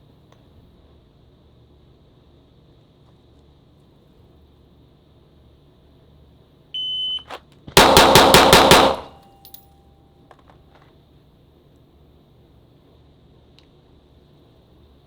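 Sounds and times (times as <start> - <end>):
pistol shots: 7.8 - 9.2.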